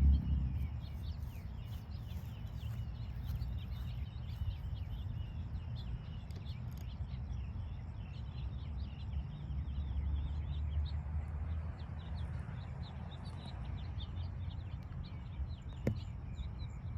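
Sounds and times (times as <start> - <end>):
low rumble: 0.0 - 5.9
small birds chirping: 0.0 - 16.9.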